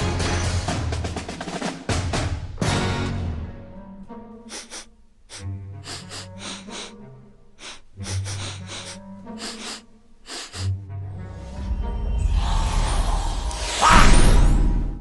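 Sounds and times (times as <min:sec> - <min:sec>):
staccato cartoon music: 0:04.5 - 0:11.0.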